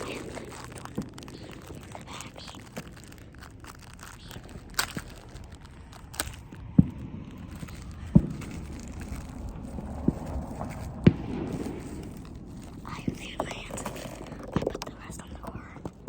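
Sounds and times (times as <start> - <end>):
faint crackling rustle: 0.0 - 16.0
sharp pops: 0.0 - 16.0
low thumps: 5.1 - 16.0.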